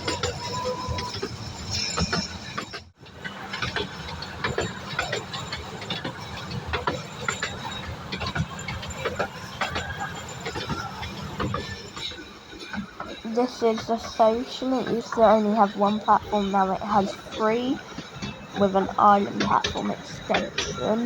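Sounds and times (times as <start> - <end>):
miniature train rumbling: 0.0 - 21.0
wheels clicking on track: 0.0 - 21.0.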